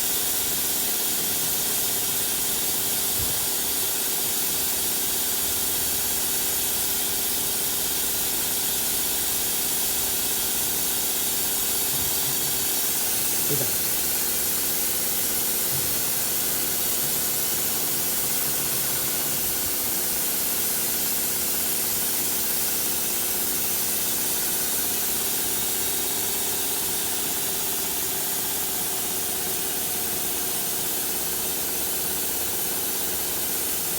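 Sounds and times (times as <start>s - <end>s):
machine hiss and hum: 0.0s - 33.9s.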